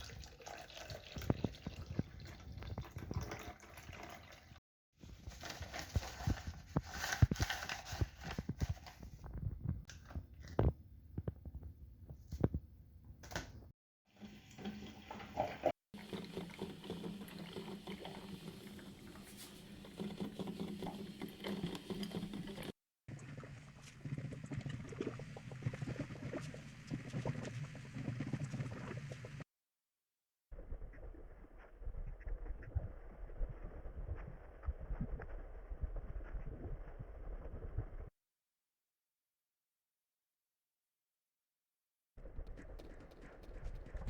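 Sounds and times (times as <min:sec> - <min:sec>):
liquid pouring and dripping: 0:00.0 - 0:04.6, 0:14.2 - 0:29.4.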